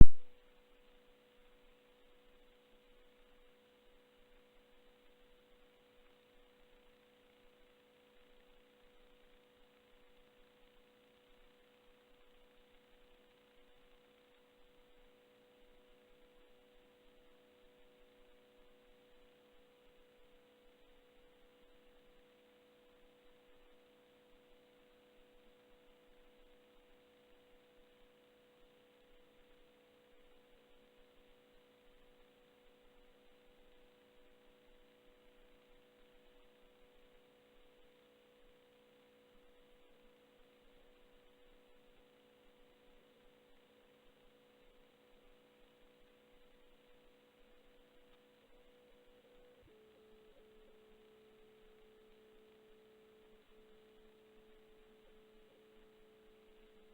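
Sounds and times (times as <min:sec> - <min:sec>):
low hiss: 0:00.0 - 0:00.4
faint electrical hum: 0:00.0 - 0:56.9.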